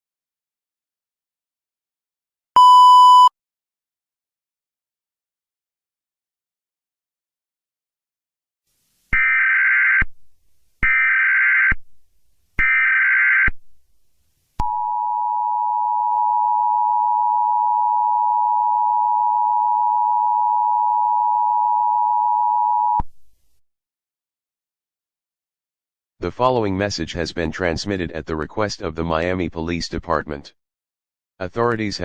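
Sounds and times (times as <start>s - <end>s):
two-tone attention signal: 2.6s - 3.3s.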